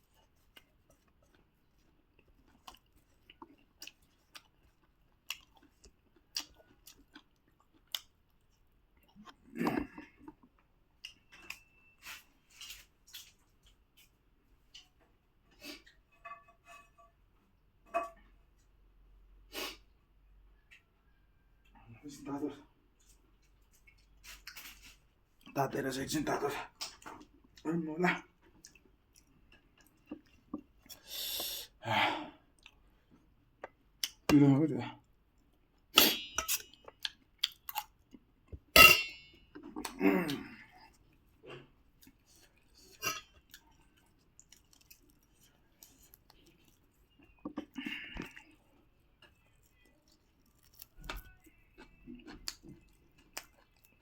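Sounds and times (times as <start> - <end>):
soft chewing: 0.0 - 16.4, 20.6 - 25.6, 26.4 - 31.8, 32.4 - 34.3, 34.9 - 54.0
metal tableware clinking: 36.0 - 36.8, 38.8 - 39.4, 43.0 - 43.4.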